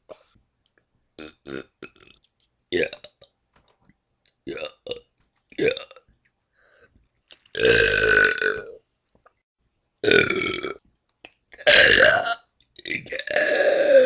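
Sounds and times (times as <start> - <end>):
person burping: 5.6 - 6.0, 7.6 - 8.8, 10.0 - 10.8, 11.6 - 14.0.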